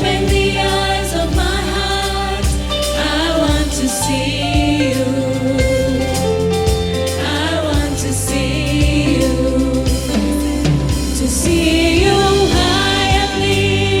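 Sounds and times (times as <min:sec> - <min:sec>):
bass line: 0:00.0 - 0:14.0
drum kit: 0:00.0 - 0:14.0
voices singing worship song: 0:00.0 - 0:14.0.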